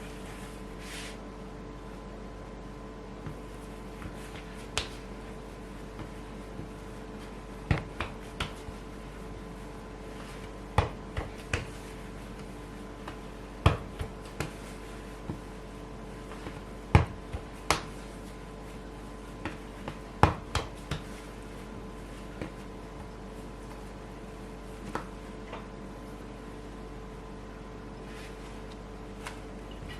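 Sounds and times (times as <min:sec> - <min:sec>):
faint steady hum: 0:00.0 - 0:29.9
dough knocking on work surface: 0:03.2 - 0:05.1, 0:07.6 - 0:08.8, 0:10.7 - 0:15.6, 0:16.3 - 0:18.0, 0:19.4 - 0:21.2.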